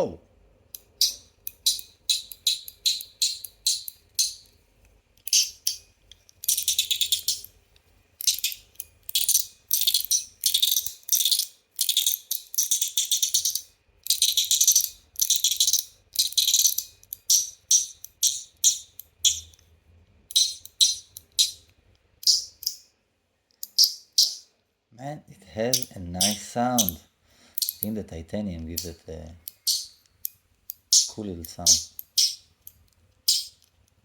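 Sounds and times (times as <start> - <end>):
metal ball rattling along track: 0.8 - 4.5, 6.4 - 7.5, 8.2 - 19.6, 25.7 - 27.0, 28.7 - 30.0.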